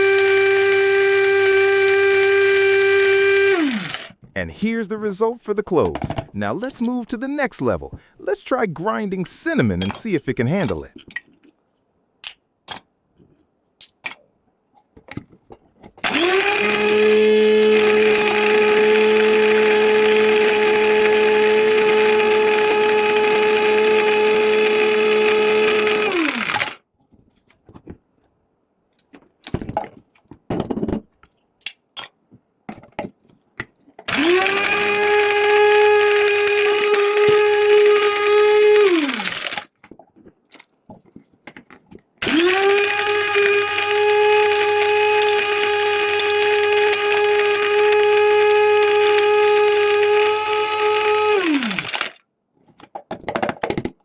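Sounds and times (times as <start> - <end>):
electric spice grinder motor: 0.0 - 4.2, 16.0 - 26.8, 34.1 - 39.7, 42.2 - 52.2
grinder clicks and knocks: 32.7 - 52.2, 52.8 - 54.0.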